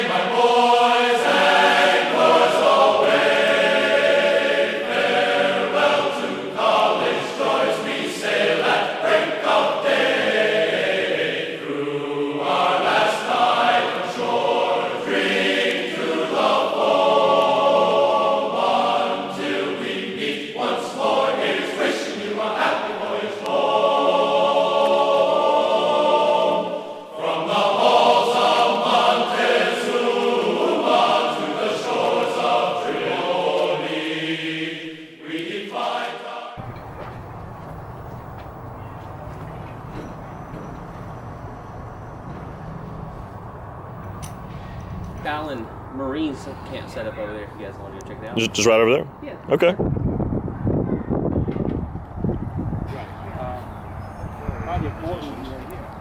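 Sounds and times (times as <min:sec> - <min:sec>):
choir singing held chords: 0:00.0 - 0:36.9.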